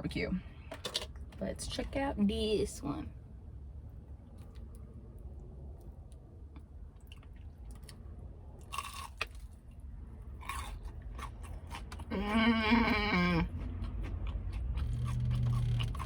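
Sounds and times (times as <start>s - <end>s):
chewing crunchy fried chicken: 4.2s - 16.0s.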